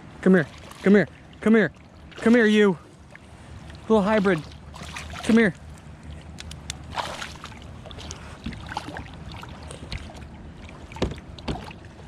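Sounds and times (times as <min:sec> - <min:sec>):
low wind rumble: 0:00.0 - 0:12.0
water sloshing: 0:00.0 - 0:12.0
knocks and clicks on a kayak: 0:11.0 - 0:11.7.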